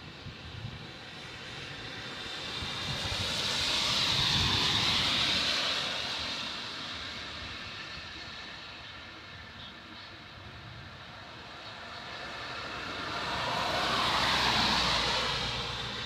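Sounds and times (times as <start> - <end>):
vehicle passing: 11.8 - 16.0.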